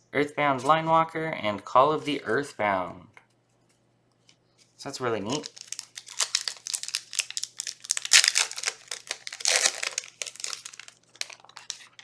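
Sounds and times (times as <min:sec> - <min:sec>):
foil wrapper crinkling: 0:05.3 - 0:12.0.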